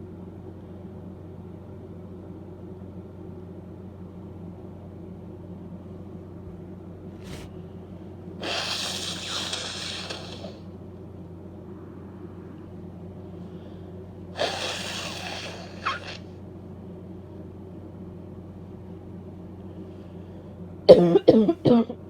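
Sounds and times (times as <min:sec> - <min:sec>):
steady low hum: 0:00.0 - 0:22.0
woman sniffing: 0:07.2 - 0:07.6, 0:08.4 - 0:10.6, 0:14.4 - 0:16.2
woman sneezing: 0:08.4 - 0:10.6, 0:14.4 - 0:16.2.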